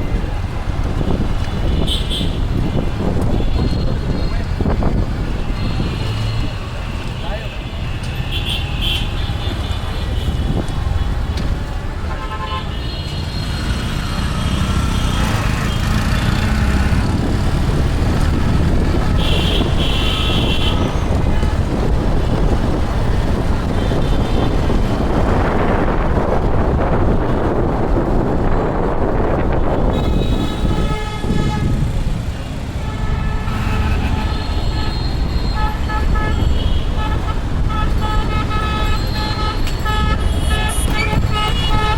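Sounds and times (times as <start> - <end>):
traffic rumble: 0.0 - 41.9
car horn toots: 19.2 - 21.0, 32.9 - 41.9
loud rushing noise: 30.6 - 35.3.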